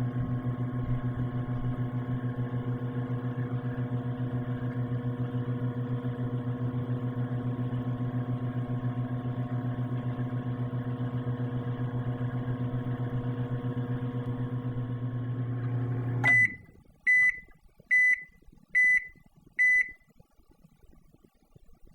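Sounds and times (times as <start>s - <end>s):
microwave oven humming: 0.0s - 20.1s
microwave short high beeps: 16.2s - 20.0s.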